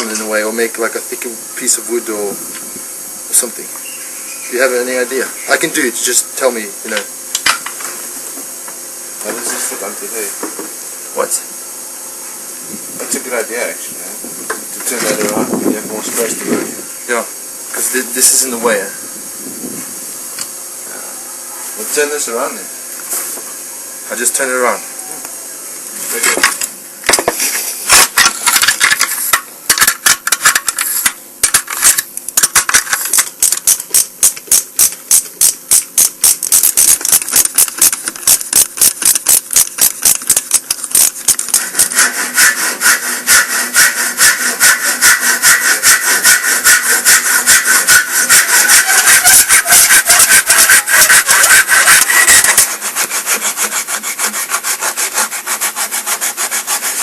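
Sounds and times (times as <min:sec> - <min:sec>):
handsaw cutting wood: 0:26.1 - 0:57.0.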